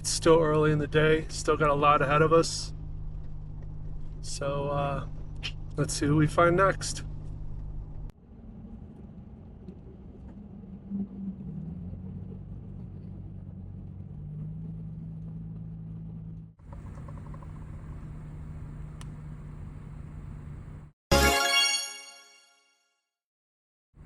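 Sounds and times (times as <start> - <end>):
road rumble: 0.0 - 21.0
car engine hum: 9.9 - 20.9.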